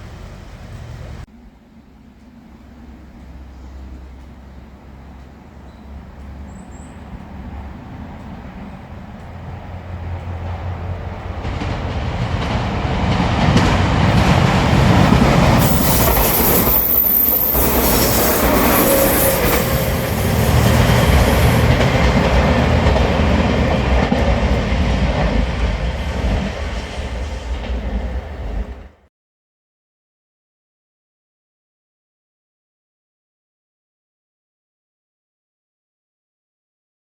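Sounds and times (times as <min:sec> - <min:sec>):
diesel train passing: 0:00.0 - 0:29.1.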